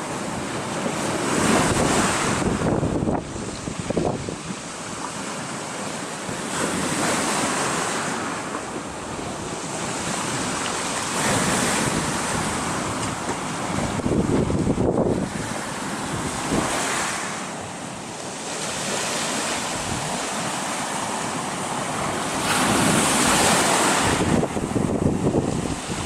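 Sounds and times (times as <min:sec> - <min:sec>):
surf breaking on shore: 0:00.0 - 0:26.0
wind buffeting microphone: 0:00.3 - 0:05.2, 0:08.7 - 0:17.1, 0:18.6 - 0:26.0.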